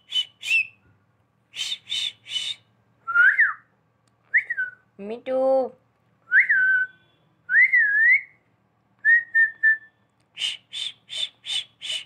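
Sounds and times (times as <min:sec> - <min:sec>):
parakeet whistling: 0:09.4 - 0:12.0.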